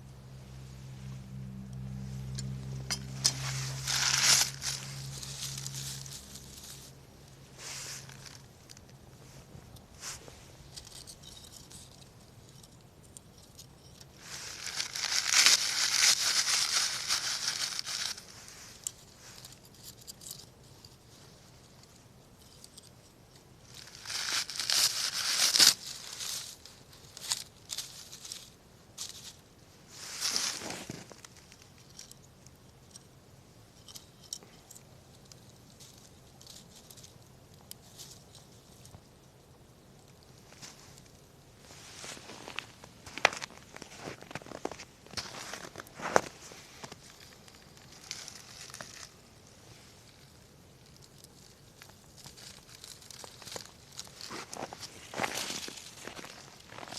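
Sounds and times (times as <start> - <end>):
paper crumpling and tearing: 3.3 - 6.8, 14.2 - 18.3, 23.8 - 26.5.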